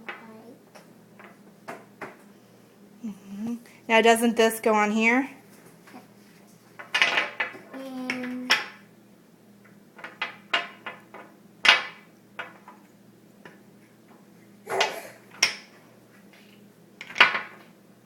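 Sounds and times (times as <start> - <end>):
wooden toy pieces knocking: 6.8 - 8.8, 10.0 - 12.8, 17.0 - 17.7.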